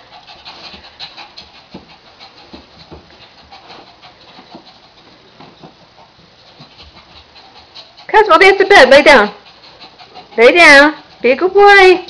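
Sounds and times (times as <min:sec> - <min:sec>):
dog panting softly: 0:00.0 - 0:12.0
rustles and taps on bed: 0:01.6 - 0:04.7.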